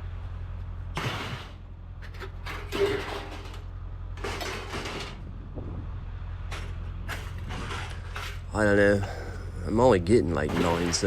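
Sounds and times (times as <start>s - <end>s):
metal scraping and clanking: 0.9s - 5.4s, 6.4s - 9.2s, 10.3s - 11.0s.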